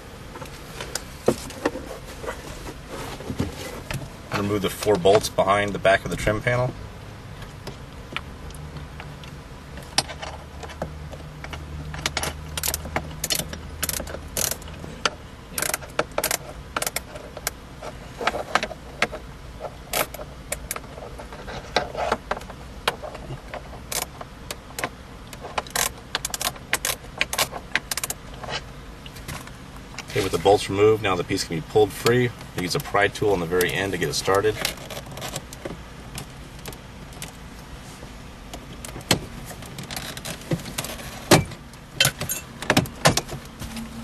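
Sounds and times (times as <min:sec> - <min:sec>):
low steady hum: 0:00.0 - 0:44.0
metallic clinks of tools and bolts: 0:42.0 - 0:42.6.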